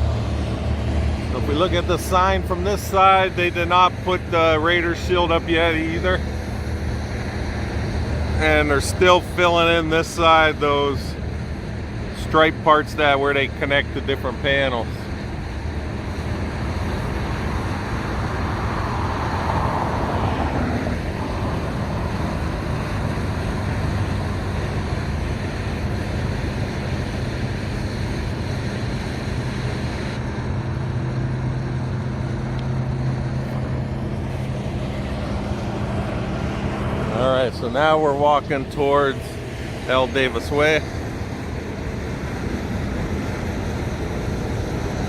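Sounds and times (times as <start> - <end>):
low engine hum: 0.0 - 45.0
road traffic noise: 0.0 - 45.0
vehicle passing by: 16.2 - 27.6, 28.4 - 45.0.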